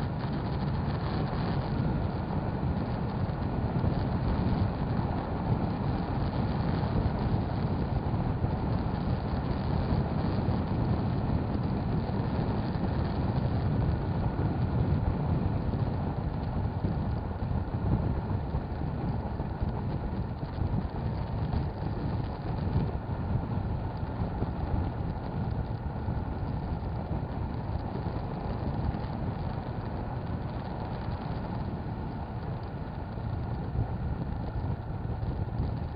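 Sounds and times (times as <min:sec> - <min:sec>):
wind and road noise: 0:00.0 - 0:35.9.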